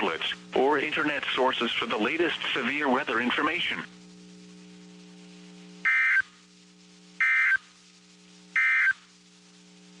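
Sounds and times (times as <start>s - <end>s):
low electrical hum: 0.0s - 10.0s
warbling digital data tones: 5.8s - 6.3s.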